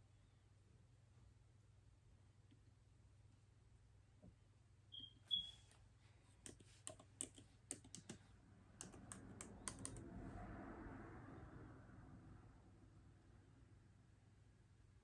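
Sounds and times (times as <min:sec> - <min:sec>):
short high chirps: 0:04.9 - 0:05.6
laptop keyboard typing: 0:06.4 - 0:10.1.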